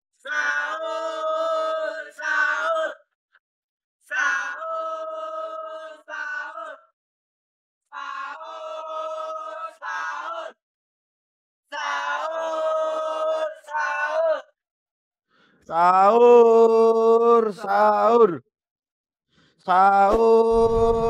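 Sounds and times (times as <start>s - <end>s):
person chanting sing-song call: 15.7s - 18.4s.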